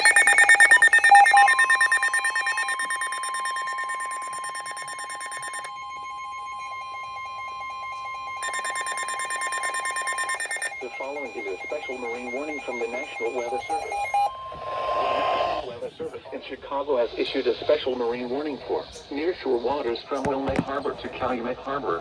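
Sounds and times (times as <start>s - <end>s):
rapid pulsing alarm beeps: 0.0s - 16.0s
steady warning alarm tone: 0.0s - 16.2s.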